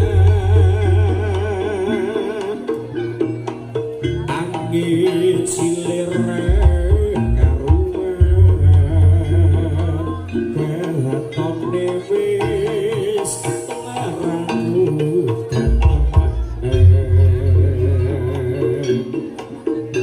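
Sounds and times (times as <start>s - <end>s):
deep sustained low tones: 0.0s - 1.8s
gamelan music with drumming: 0.0s - 20.0s.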